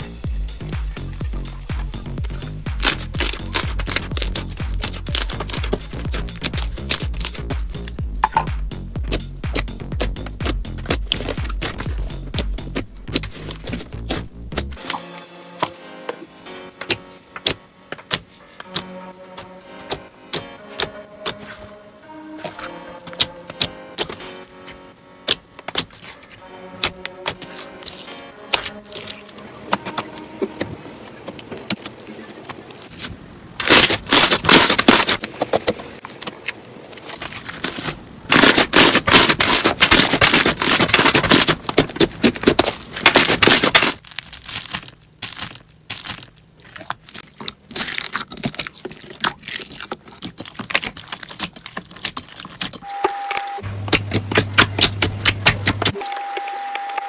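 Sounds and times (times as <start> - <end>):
slime crackling and clicking: 2.4 - 8.5, 16.8 - 18.9, 22.4 - 24.4, 25.2 - 30.7, 33.6 - 57.0.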